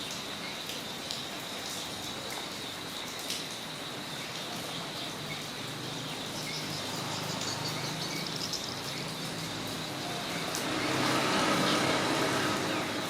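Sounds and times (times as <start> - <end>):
steady rain falling: 0.0 - 13.0
high insect trill: 3.7 - 13.0.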